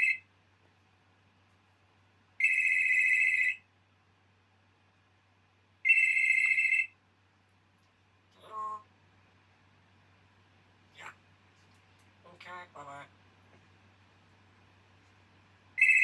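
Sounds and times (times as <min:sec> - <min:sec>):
telephone ringtone: 0:00.0 - 0:00.2, 0:02.4 - 0:03.6, 0:05.8 - 0:07.0, 0:15.8 - 0:16.0.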